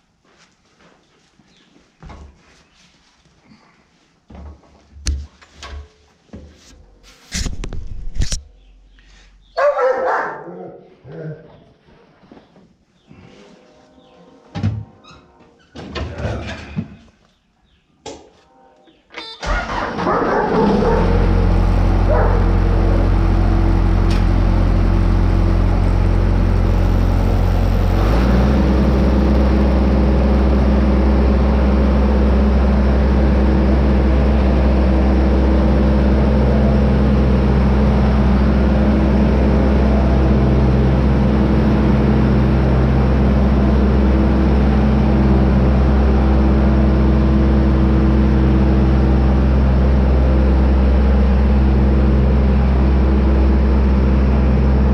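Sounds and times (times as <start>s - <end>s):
tractor engine running: 19.2s - 54.9s.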